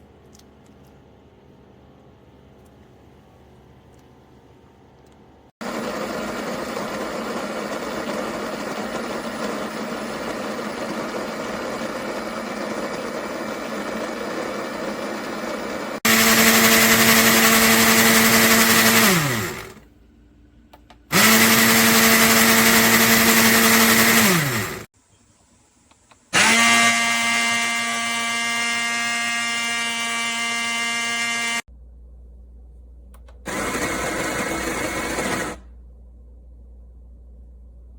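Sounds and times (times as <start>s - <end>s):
coffee grinder motor humming: 5.6s - 19.8s, 21.1s - 24.9s, 26.4s - 31.7s, 33.5s - 35.6s.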